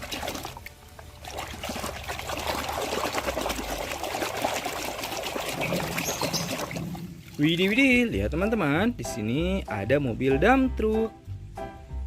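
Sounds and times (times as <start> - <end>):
water pouring and trickling: 0.0 - 8.4.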